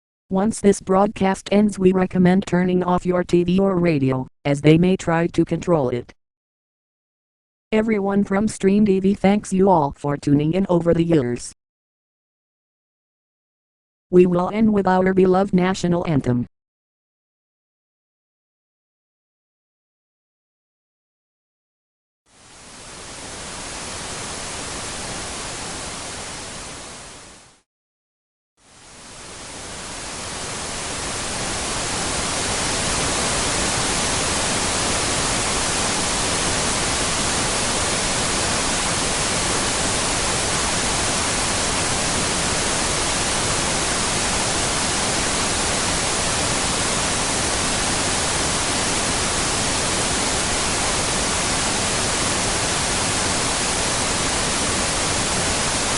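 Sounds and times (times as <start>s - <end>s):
television static hiss: 22.4s - 27.6s, 28.7s - 55.9s.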